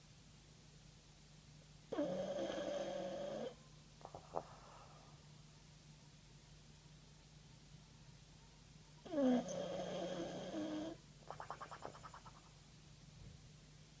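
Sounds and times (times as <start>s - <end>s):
dog snoring: 1.9s - 3.6s, 9.0s - 11.0s.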